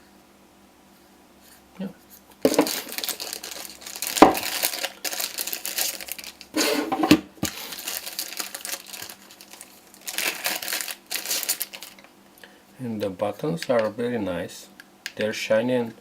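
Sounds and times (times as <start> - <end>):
packaging rustling: 2.4 - 12.1.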